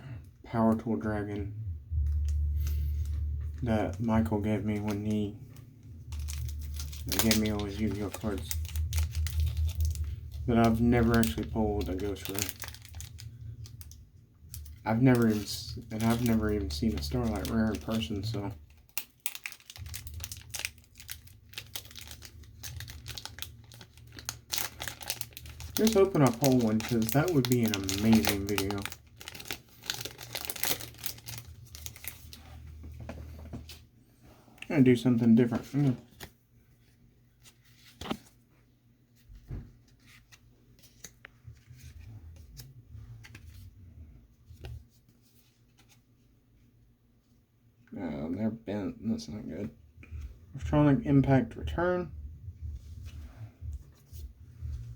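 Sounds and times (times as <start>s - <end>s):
foil wrapper crinkling: 6.1s - 32.6s.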